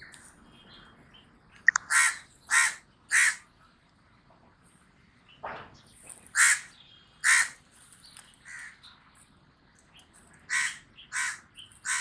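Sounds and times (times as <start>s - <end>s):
raven croaking: 10.5s - 12.0s.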